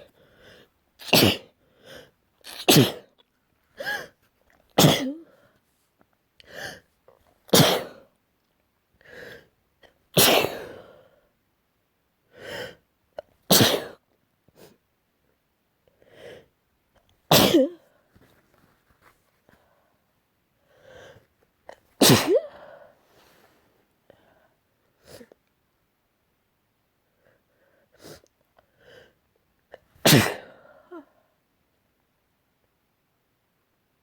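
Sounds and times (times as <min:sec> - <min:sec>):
person sneezing: 0:01.0 - 0:01.6, 0:02.4 - 0:03.1, 0:04.8 - 0:05.3, 0:07.5 - 0:08.0, 0:10.2 - 0:10.9, 0:13.5 - 0:14.0, 0:17.3 - 0:17.8, 0:22.0 - 0:22.8, 0:30.0 - 0:31.2.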